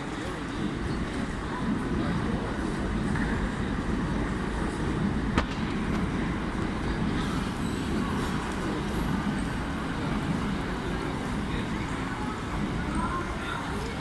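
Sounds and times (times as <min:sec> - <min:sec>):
sharp click: 0:05.4 - 0:06.0.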